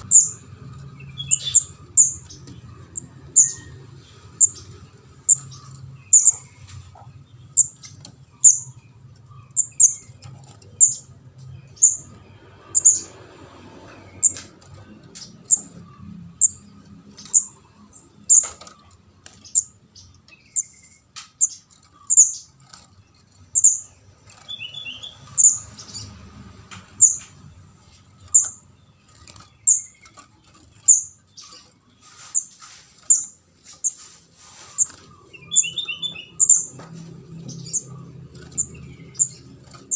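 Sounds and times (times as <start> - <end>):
fledgling bird high chip calls: 1.1 - 3.7, 5.3 - 8.8, 23.5 - 26.0, 30.9 - 36.8.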